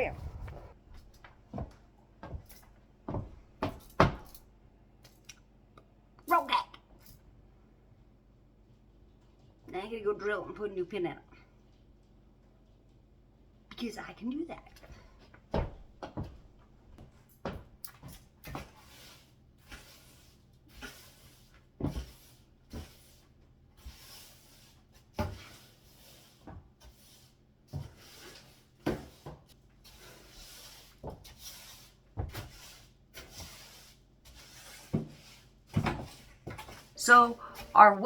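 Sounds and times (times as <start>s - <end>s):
soft rubbing and swishing: 18.7s - 38.0s.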